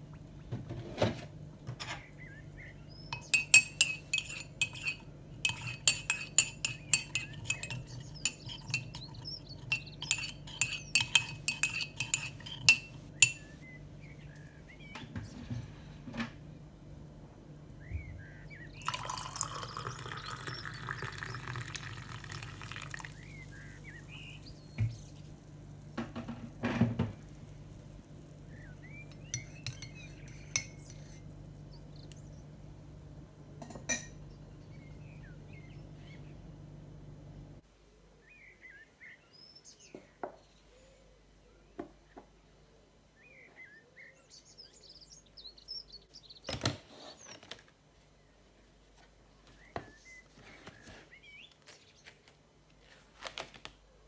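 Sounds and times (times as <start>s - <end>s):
metal utensil clinking dishware: 3.1s - 13.6s, 29.1s - 31.2s
scattered knocks and clinks: 3.2s - 13.6s
liquid pouring: 18.8s - 23.6s.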